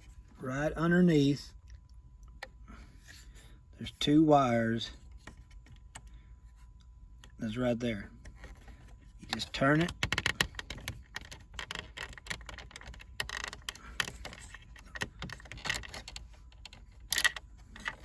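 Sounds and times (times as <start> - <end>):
small plastic clicks and rattles: 8.2 - 18.0.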